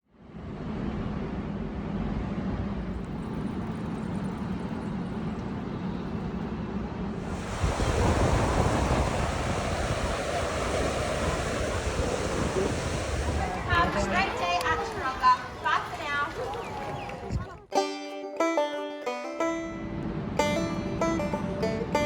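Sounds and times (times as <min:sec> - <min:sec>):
wind buffeting microphone: 0:04.9 - 0:17.7
ocean surf: 0:06.7 - 0:17.4.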